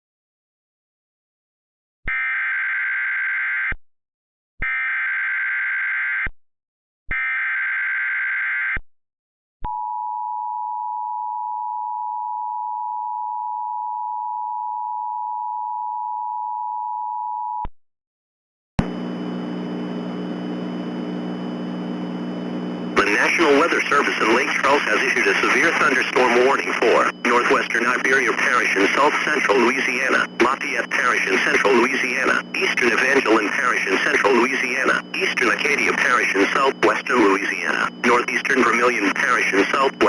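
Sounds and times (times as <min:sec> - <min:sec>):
steady hum with hiss: 0:18.9 - 0:40.0
digital data bursts: 0:23.0 - 0:40.0.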